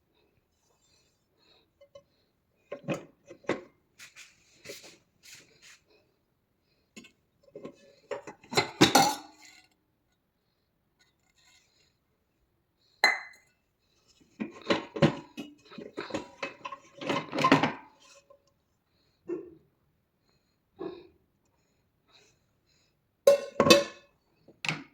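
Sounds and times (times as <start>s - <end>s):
dishes and cutlery clattering: 7.6s - 9.5s, 14.4s - 18.0s, 23.3s - 24.1s.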